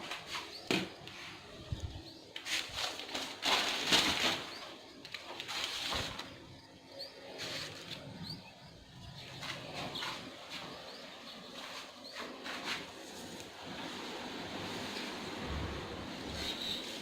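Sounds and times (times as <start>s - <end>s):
broom sweeping floor: 0.0s - 4.6s, 5.3s - 6.4s, 7.3s - 8.4s, 9.2s - 17.0s
birds chirping: 0.2s - 3.4s, 4.1s - 13.8s.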